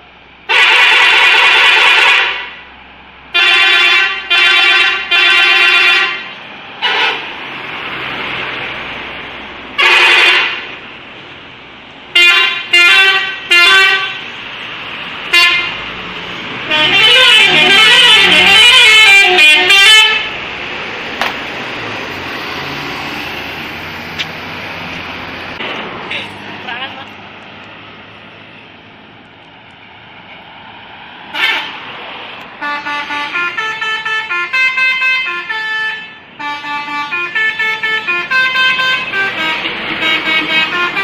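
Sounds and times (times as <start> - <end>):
musical bus air horn: 0.5 - 2.6, 3.3 - 7.4, 9.8 - 10.7, 12.1 - 14.3, 15.3 - 15.8, 16.7 - 20.3, 31.3 - 31.8, 32.6 - 41.0.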